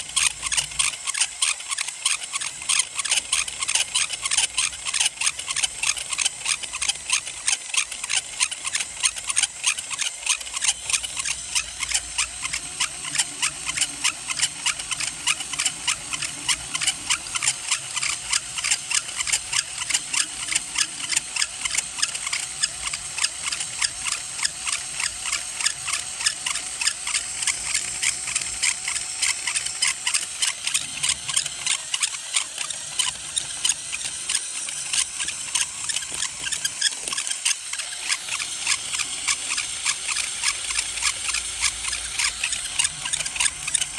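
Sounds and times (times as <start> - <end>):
plastic gears squeaking: 0.0 - 43.9.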